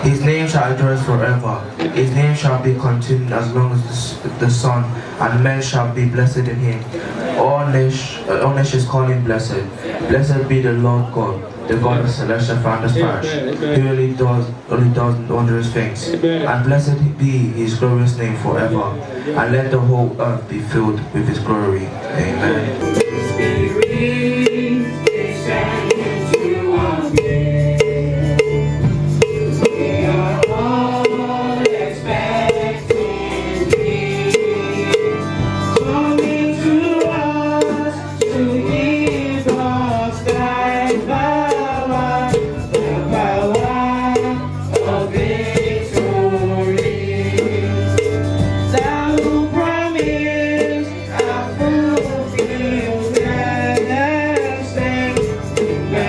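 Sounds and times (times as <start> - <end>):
choir singing with instruments: 22.1 - 56.0
steady drum beat: 22.8 - 56.0.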